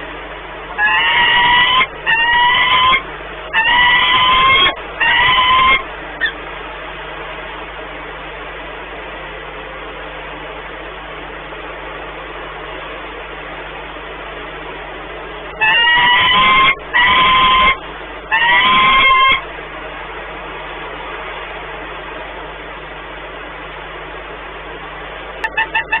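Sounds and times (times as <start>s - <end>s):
falcon harsh calls: 0.8s - 6.4s, 15.6s - 19.5s, 25.5s - 26.0s.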